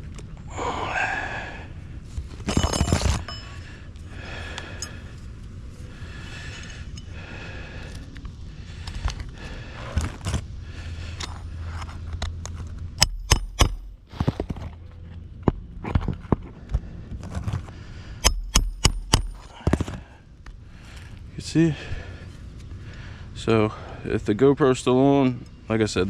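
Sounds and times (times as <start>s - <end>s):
shingles scraping and rustling: 2.4s - 3.3s
nails being hammered: 13.0s - 14.1s, 18.2s - 19.7s.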